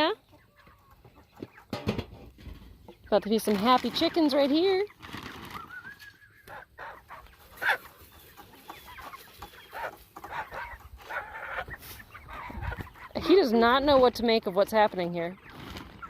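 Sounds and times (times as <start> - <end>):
chickens clucking: 0.0 - 16.0.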